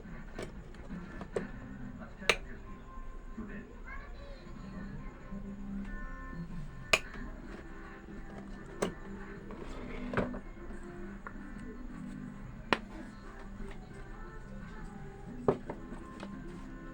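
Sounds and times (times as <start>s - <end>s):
background music: 4.7s - 16.9s.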